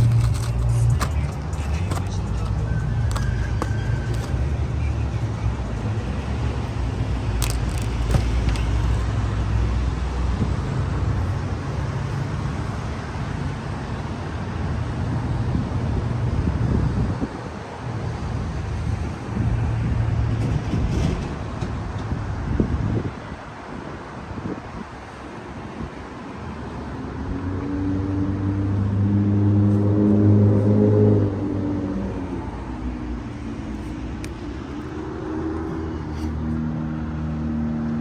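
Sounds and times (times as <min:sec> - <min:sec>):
low outdoor rumble: 0:00.0 - 0:23.4.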